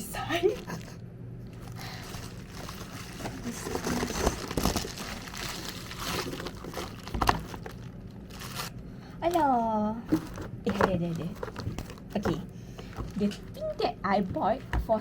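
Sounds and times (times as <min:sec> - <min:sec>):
packaging rustling and crinkling: 0:00.6 - 0:09.5, 0:10.1 - 0:12.3.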